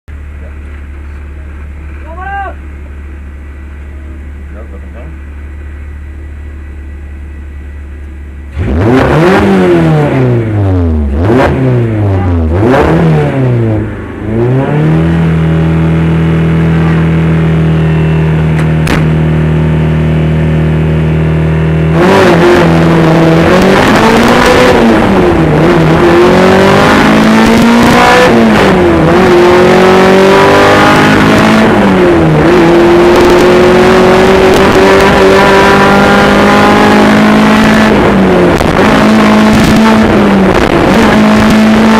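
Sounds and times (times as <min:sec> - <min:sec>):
car engine revving and accelerating: 0:08.5 - 0:41.9.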